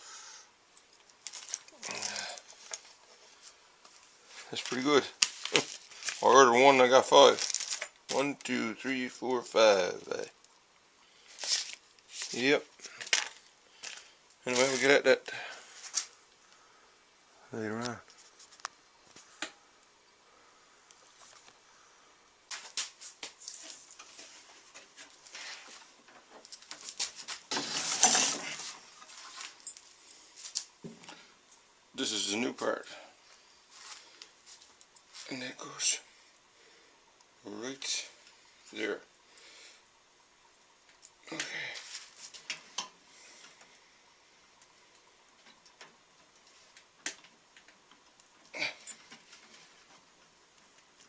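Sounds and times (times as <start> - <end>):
rustling: 0.8 - 8.7, 10.4 - 16.8, 17.7 - 19.6, 20.5 - 32.4, 33.2 - 36.0, 40.8 - 43.8.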